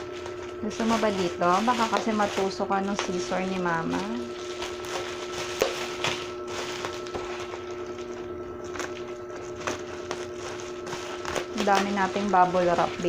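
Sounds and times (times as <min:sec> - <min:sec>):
plastic packaging crinkling: 0:00.0 - 0:13.0
steady low hum: 0:00.0 - 0:13.0
scissors cutting plastic: 0:00.3 - 0:13.0.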